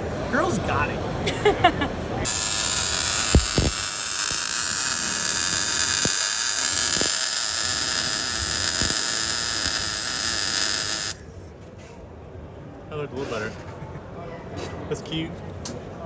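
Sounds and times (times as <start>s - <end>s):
welding arc hissing: 2.2s - 11.2s.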